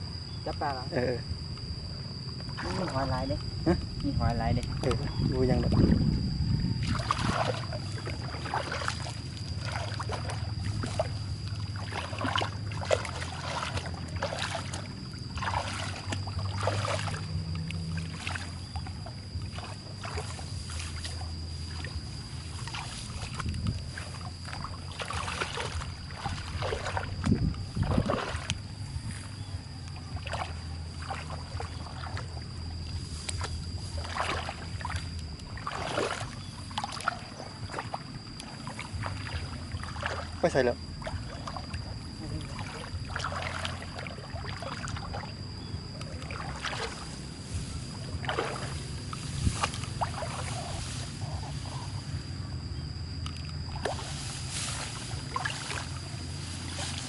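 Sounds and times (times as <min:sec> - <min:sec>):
steady low hum: 0:00.0 - 0:57.0
thin high whine: 0:00.0 - 0:57.0
hands splashing in muddy water: 0:06.8 - 0:17.3, 0:33.0 - 0:38.0, 0:46.0 - 0:47.1, 0:48.0 - 0:51.7, 0:53.7 - 0:57.0.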